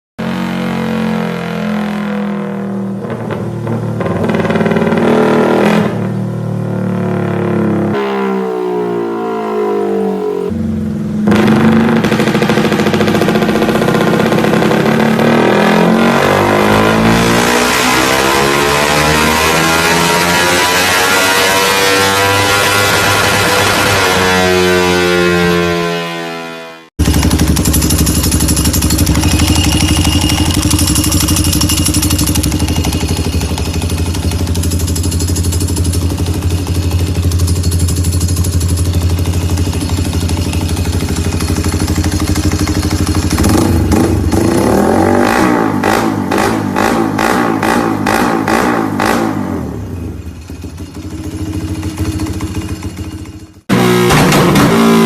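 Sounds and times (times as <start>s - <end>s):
engine throttle blips: 1.8s - 25.8s, 27.0s - 55.0s
motorcycle engine idling: 27.0s - 44.6s, 49.8s - 53.6s.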